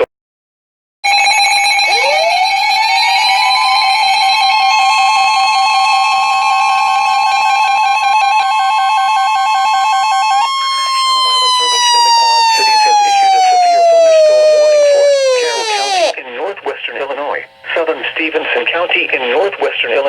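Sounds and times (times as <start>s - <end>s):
fast warbling alarm: 1.1s - 16.2s
high alert tone swooping up: 10.8s - 16.1s.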